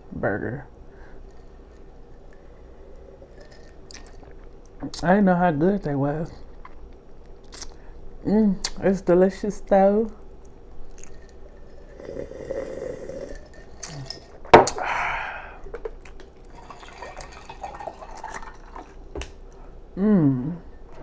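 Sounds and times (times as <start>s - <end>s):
wet chewing and lip smacking: 6.5s - 7.8s
short vocal sound: 20.0s - 20.7s.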